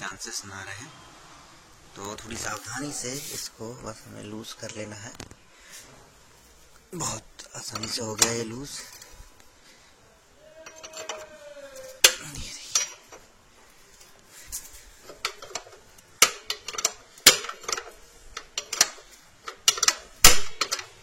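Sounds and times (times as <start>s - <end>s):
spanner clinking on metal: 7.6s - 9.0s, 12.0s - 13.3s, 15.0s - 21.0s.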